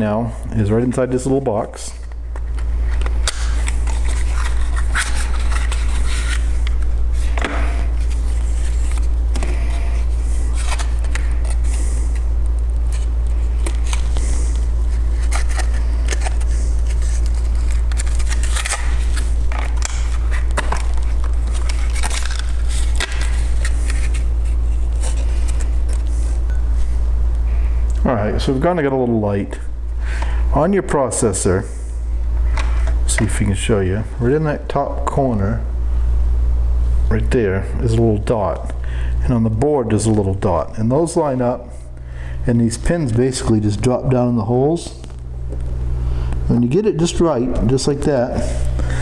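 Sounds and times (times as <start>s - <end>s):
steady low hum: 0.0s - 49.0s
cardboard and plastic rustling: 0.7s - 26.5s.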